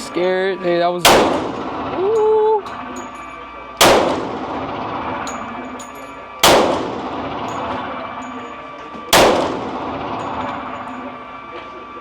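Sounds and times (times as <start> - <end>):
pistol shots: 1.0 - 2.0, 3.8 - 5.6, 6.4 - 8.0, 9.1 - 11.0
ringing echo: 1.0 - 11.6.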